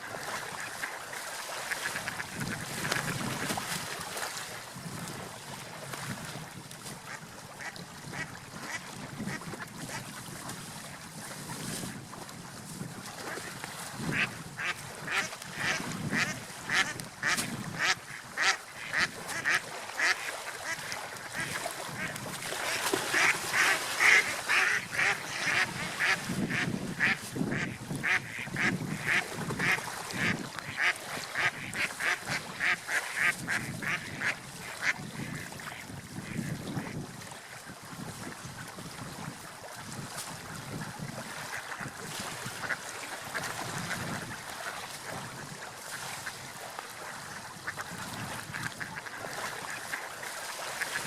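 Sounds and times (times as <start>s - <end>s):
ducks quacking: 14.1s - 35.7s, 48.5s - 50.0s.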